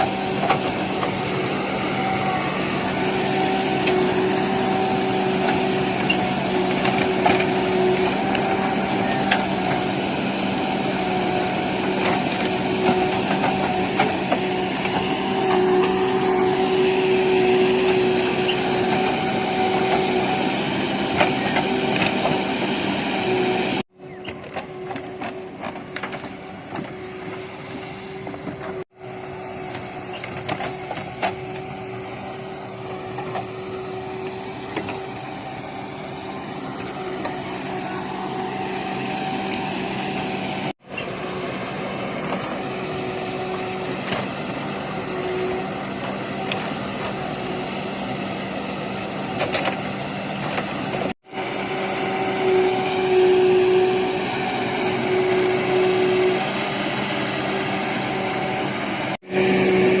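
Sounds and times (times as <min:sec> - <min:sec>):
diesel engine droning: 0:00.0 - 1:00.0.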